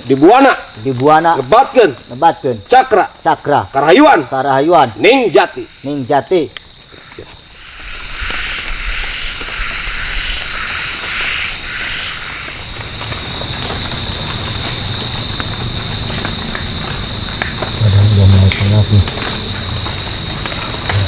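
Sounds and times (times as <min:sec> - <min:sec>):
crickets chirring: 0:00.0 - 0:21.0
insect hissing: 0:04.8 - 0:21.0.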